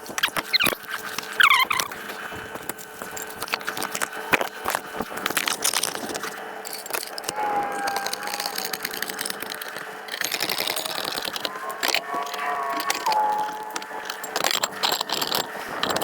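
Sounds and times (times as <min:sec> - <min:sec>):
objects clattering while rummaging: 0:00.0 - 0:16.0
thin steady tone: 0:06.9 - 0:15.4.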